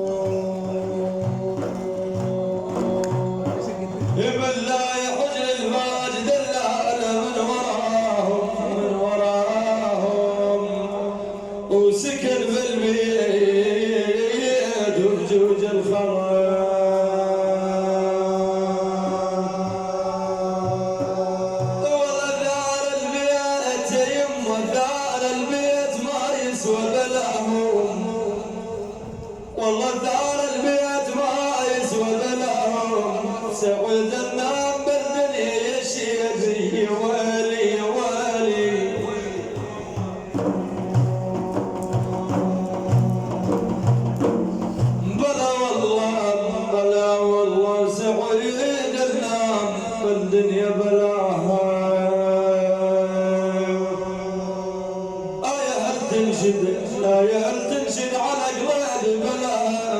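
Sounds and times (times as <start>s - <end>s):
person singing: 0.0s - 5.2s, 38.8s - 45.5s
regular drum beat: 0.1s - 4.4s, 19.6s - 22.2s, 39.0s - 45.3s.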